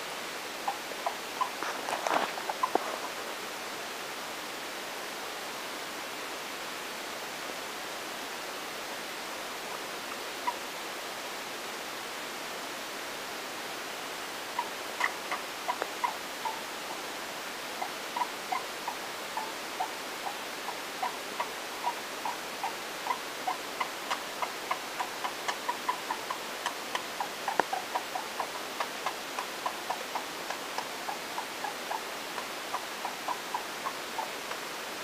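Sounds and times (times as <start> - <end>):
hamster chirping: 0.6 - 3.2, 17.8 - 20.4, 21.0 - 32.1, 32.7 - 34.3.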